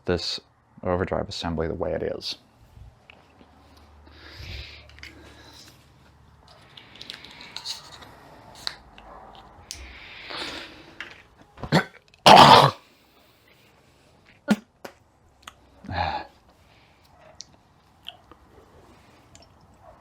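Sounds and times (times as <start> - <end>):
person coughing: 11.7 - 12.8.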